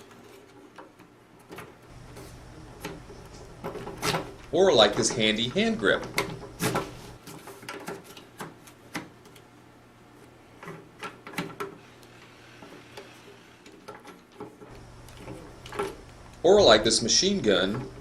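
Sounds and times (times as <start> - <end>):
faint steady hum: 1.9 - 7.2, 14.7 - 18.0.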